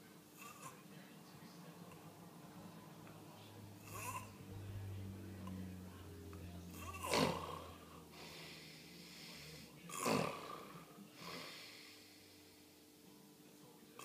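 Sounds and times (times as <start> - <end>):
person snoring: 3.8 - 4.4, 6.7 - 12.4.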